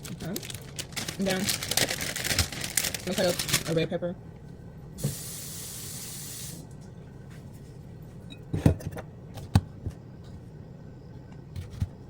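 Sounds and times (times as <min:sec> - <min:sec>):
hiss: 0:05.0 - 0:06.6.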